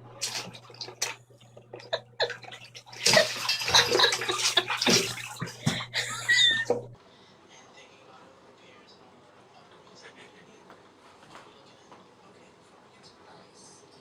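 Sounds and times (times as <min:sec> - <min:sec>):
water splashing and sloshing: 0:00.0 - 0:07.0.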